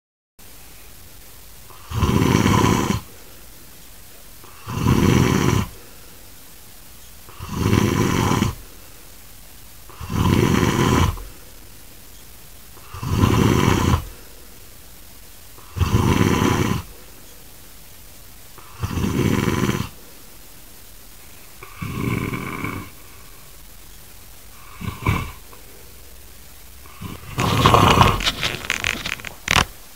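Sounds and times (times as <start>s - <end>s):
person snoring loudly: 1.7s - 3.2s, 4.4s - 5.8s, 7.3s - 8.7s, 9.9s - 11.4s, 12.8s - 14.3s, 15.6s - 17.0s, 18.6s - 20.0s, 21.6s - 23.5s, 24.5s - 25.9s, 26.8s - 29.6s.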